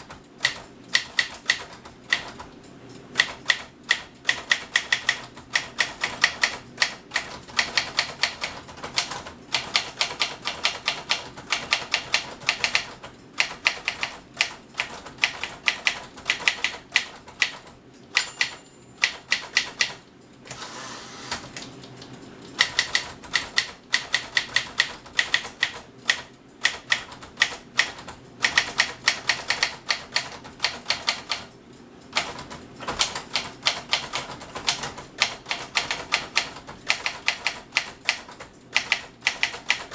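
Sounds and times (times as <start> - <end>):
typewriter key strikes: 3.2 - 20.0, 22.6 - 31.5.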